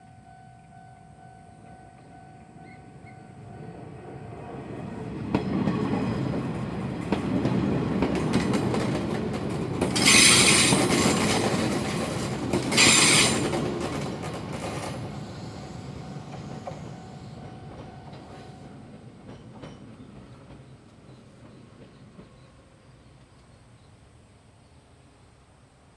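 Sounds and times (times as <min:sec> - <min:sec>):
electric train passing: 0:00.0 - 0:23.2
train wheel clatter: 0:05.2 - 0:22.7
short high-pitched bursts: 0:12.7 - 0:13.5.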